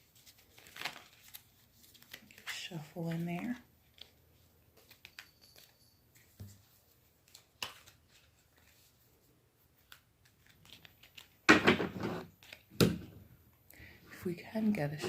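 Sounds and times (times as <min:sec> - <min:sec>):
cards riffle shuffling: 0:00.1 - 0:09.0, 0:09.8 - 0:11.4.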